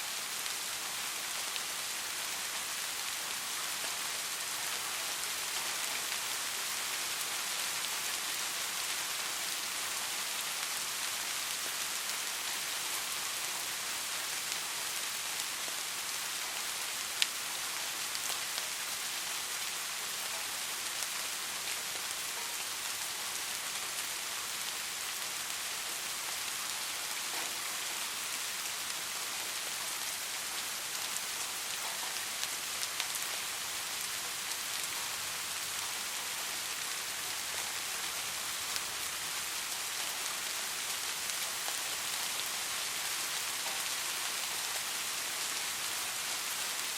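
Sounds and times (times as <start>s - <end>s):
soft rain falling: 0.0s - 46.9s.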